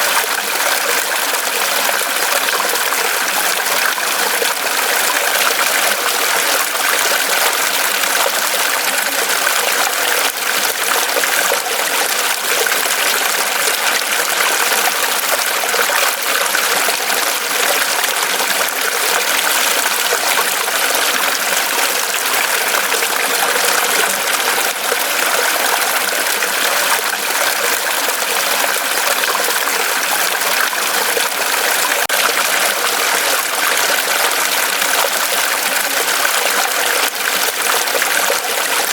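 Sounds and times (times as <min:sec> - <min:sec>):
stream rushing over rocks: 0:00.0 - 0:38.9.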